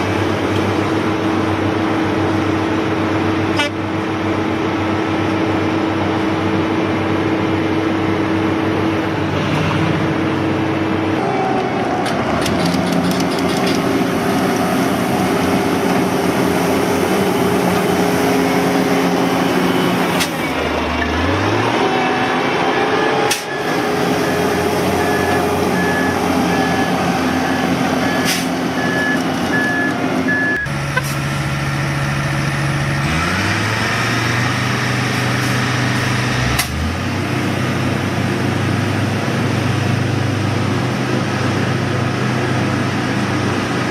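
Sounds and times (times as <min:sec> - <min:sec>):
heavy machinery engines running: 0:00.0 - 0:43.9
backup alarm beeping: 0:23.1 - 0:30.8.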